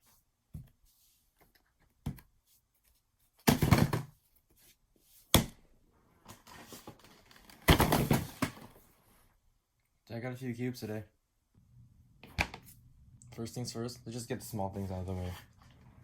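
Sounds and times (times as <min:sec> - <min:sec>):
boxes knocking and thudding: 0:03.4 - 0:04.2, 0:07.6 - 0:08.8.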